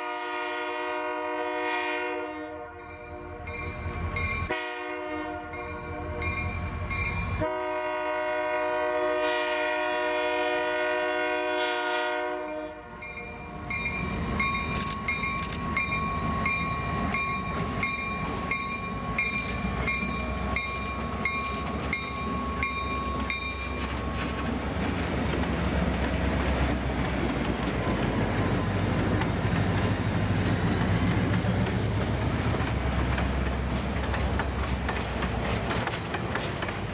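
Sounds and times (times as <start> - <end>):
locomotive air horn: 0.0 - 3.6, 4.5 - 6.3, 7.4 - 13.0
train rumbling past: 0.0 - 36.9
bell ringing: 13.0 - 24.2.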